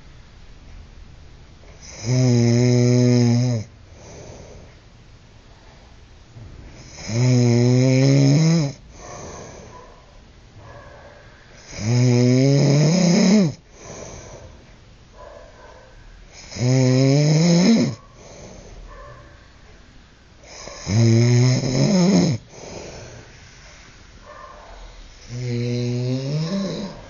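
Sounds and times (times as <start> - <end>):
man snoring loudly: 1.8 - 3.7, 6.8 - 9.3, 11.6 - 14.1, 16.3 - 18.0, 20.4 - 23.2, 25.2 - 27.0
quiet breathing: 3.6 - 7.2, 8.6 - 12.0, 13.3 - 16.7, 17.8 - 21.1, 21.7 - 27.0.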